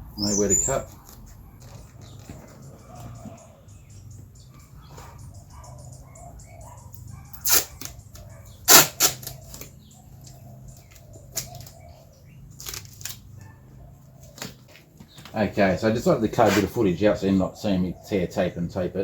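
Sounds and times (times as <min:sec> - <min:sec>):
sheet being cut with rasping: 0:08.7 - 0:09.4.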